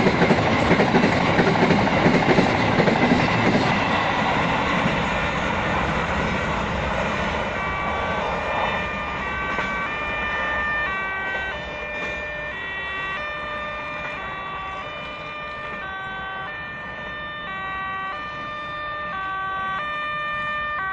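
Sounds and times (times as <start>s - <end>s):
train wheel noise: 0.0s - 19.8s
level crossing warning alarm: 7.5s - 20.9s.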